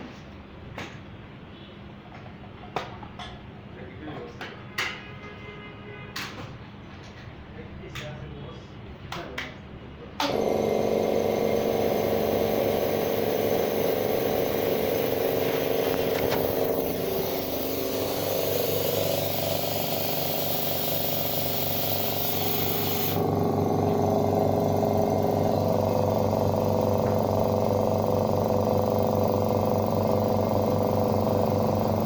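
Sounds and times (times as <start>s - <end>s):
air compressor humming: 10.2s - 32.0s
high air hiss: 11.5s - 23.2s.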